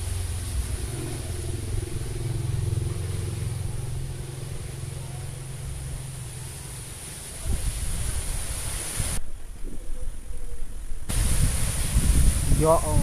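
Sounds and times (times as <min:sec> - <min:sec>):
vehicle engine running: 0:00.0 - 0:07.3
wind rumble on microphone: 0:07.3 - 0:13.0.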